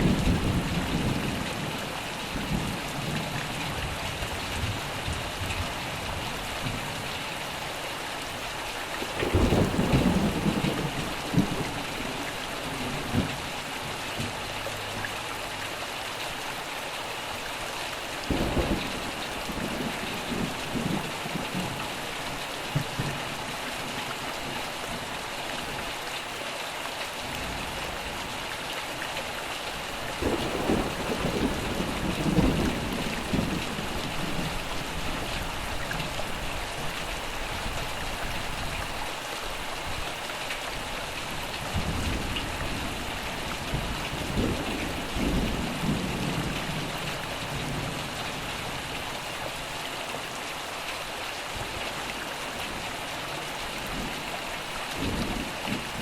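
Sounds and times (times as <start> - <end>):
steady rain falling: 0.0 - 56.0
rolling thunder: 9.1 - 13.4, 18.3 - 21.8, 30.2 - 35.6.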